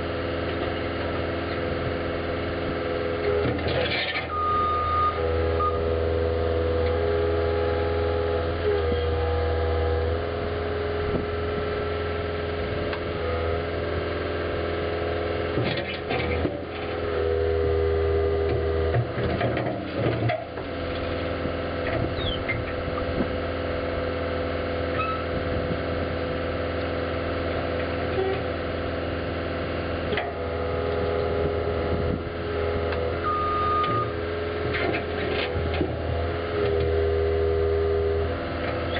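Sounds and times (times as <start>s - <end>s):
diesel engine running: 0.0s - 38.9s
back-up alarm beep: 4.3s - 5.9s, 33.2s - 34.2s.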